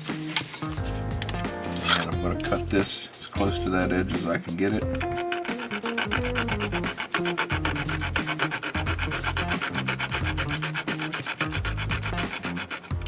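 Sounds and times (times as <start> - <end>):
razor saw rasping through plastic: 3.6 - 13.0.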